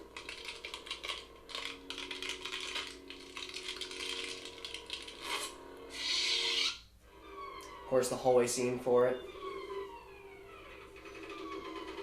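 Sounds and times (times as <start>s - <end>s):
rapid crackling clicks: 0.0s - 5.4s.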